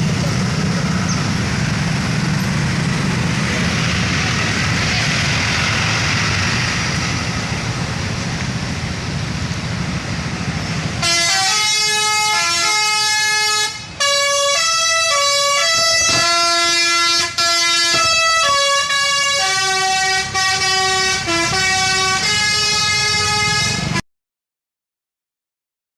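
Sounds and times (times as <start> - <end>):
engine and traffic rumble: 0.0 - 24.0
tuned air horns playing melody: 11.0 - 24.0.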